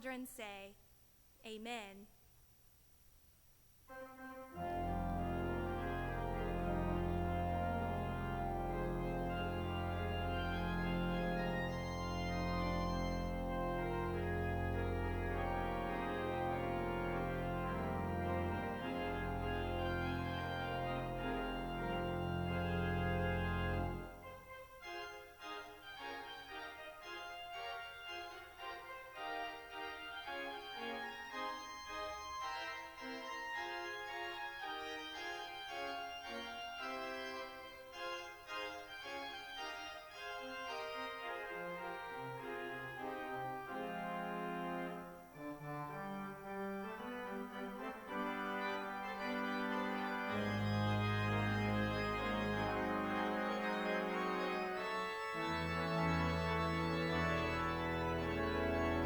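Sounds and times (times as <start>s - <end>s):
church organ playing: 3.9s - 59.0s.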